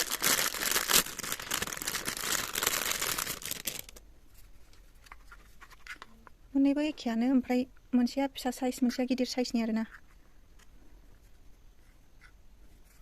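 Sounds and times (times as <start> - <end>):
plastic packaging crinkling: 0.0 - 4.0.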